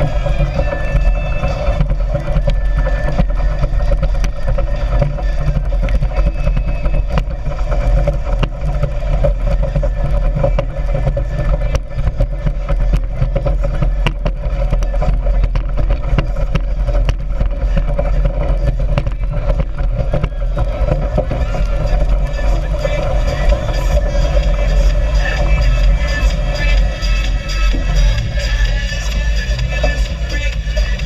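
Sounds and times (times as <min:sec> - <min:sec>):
speedboat engine running: 0:00.0 - 0:31.0
wind rumble on microphone: 0:00.0 - 0:31.0.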